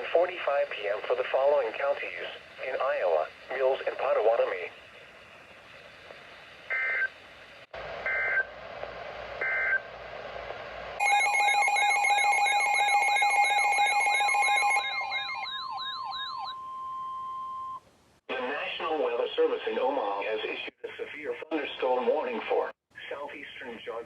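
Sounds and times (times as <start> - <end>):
screeching digital data tones: 11.0 - 17.8.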